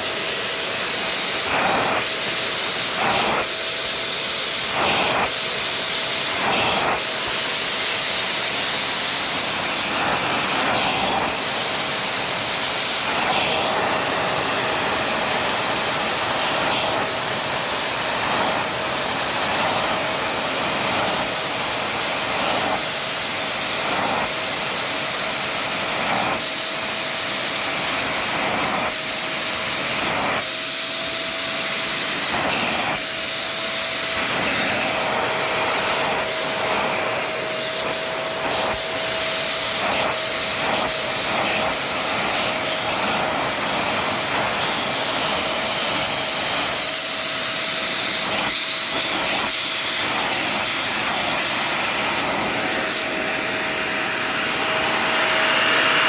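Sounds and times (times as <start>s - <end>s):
vacuum cleaner running: 0.0s - 56.0s.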